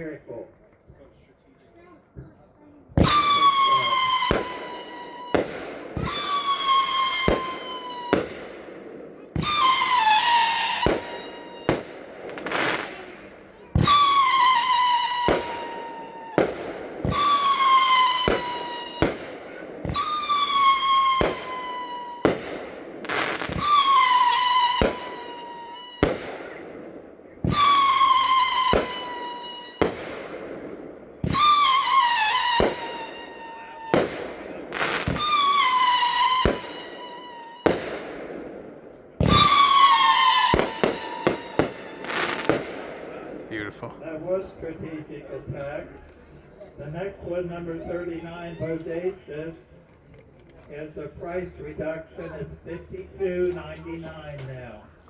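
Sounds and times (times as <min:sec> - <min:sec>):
firework shrill whistle: 0:03.0 - 0:08.3, 0:09.4 - 0:13.1, 0:13.8 - 0:22.4, 0:23.1 - 0:26.6, 0:27.4 - 0:30.1, 0:31.2 - 0:34.1, 0:34.8 - 0:37.9, 0:39.2 - 0:42.6
firework sharp bangs: 0:03.0 - 0:43.9.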